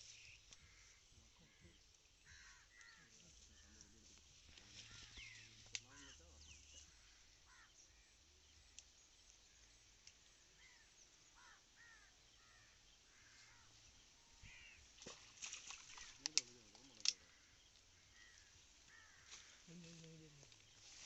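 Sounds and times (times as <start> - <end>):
faint bird calls: 0.0 - 21.0
sharp clicks: 16.0 - 17.3.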